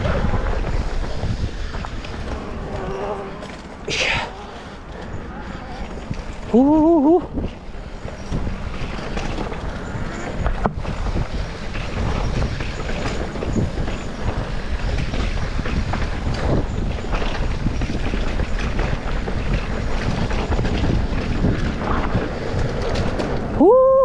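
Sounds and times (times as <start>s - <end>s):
wind buffeting microphone: 0.0s - 24.0s
short rattles and knocks: 1.7s - 6.6s.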